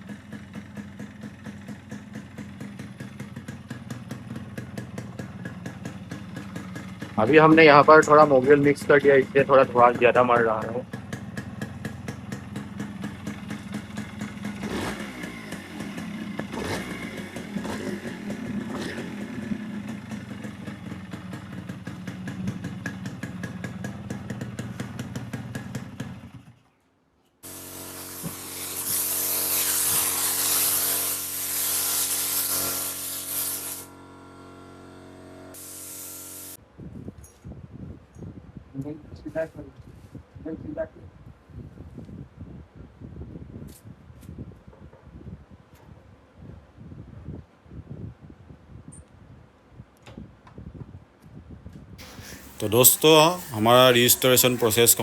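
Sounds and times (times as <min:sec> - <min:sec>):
two-stroke engine idling: 0:00.0 - 0:26.6, 0:52.0 - 0:55.0
loud steady hiss: 0:27.5 - 0:33.9, 0:35.6 - 0:36.6, 0:52.0 - 0:55.0.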